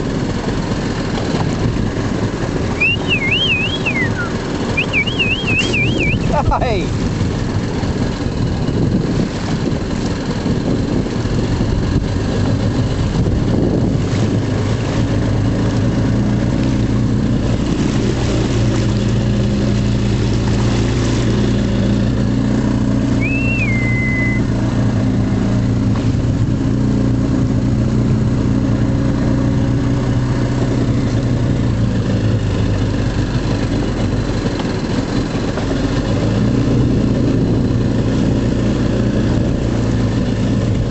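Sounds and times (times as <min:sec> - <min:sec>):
boat engine idling: 0:00.0 - 0:40.9
wind and water rushing: 0:00.0 - 0:40.9
high chirp: 0:02.8 - 0:06.4, 0:23.2 - 0:24.5.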